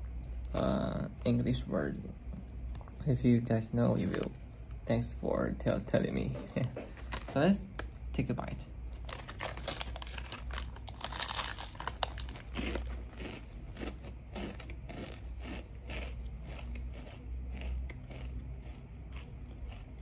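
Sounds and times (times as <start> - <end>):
plastic packet crinkling: 7.0 - 7.9, 8.9 - 13.4
crunchy chewing: 8.9 - 20.0.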